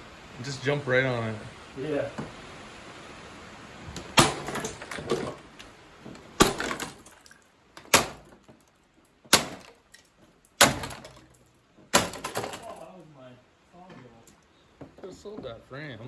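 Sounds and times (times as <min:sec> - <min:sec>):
clatter of loose pieces: 0:04.0 - 0:12.9
sledgehammer blows on car: 0:04.1 - 0:05.3, 0:06.4 - 0:07.1, 0:07.9 - 0:08.4, 0:09.3 - 0:09.8, 0:10.6 - 0:11.2, 0:11.9 - 0:12.6.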